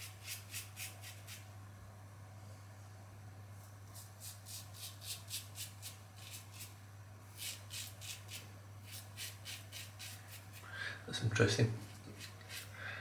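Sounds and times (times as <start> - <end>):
razor scraping stubble: 4.0 - 6.7, 7.4 - 10.7, 11.8 - 12.7.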